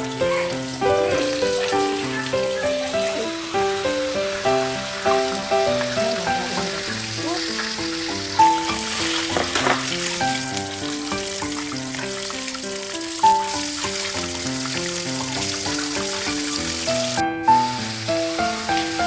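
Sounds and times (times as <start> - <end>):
crackling hiss: 0.0 - 19.0.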